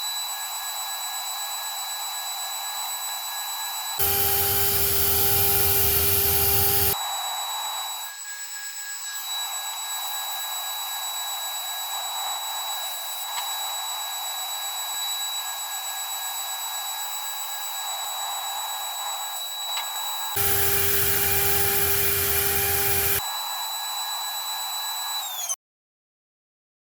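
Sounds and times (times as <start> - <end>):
cnc spindle whining: 4.0 - 7.0, 20.4 - 23.2.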